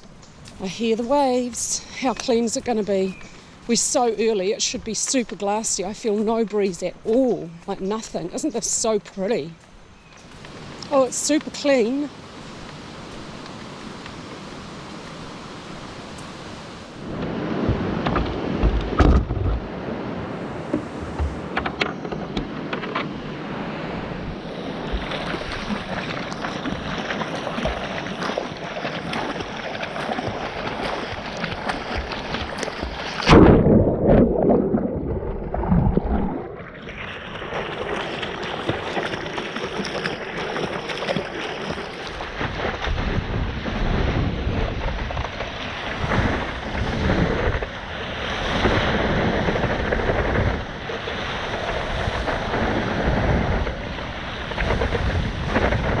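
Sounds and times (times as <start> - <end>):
wind on microphone: 10.1 - 56.0
ocean surf rushing: 12.0 - 39.4.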